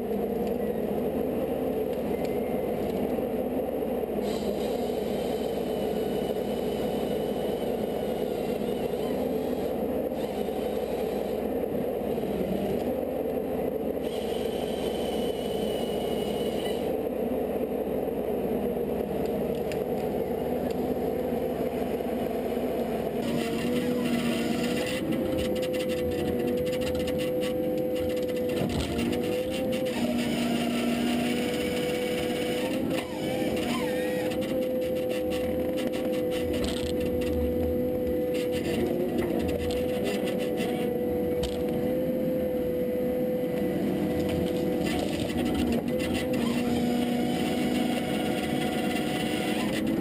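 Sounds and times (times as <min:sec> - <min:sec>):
faint high whine: 0:00.0 - 0:17.8
machine engine running: 0:00.0 - 0:50.0.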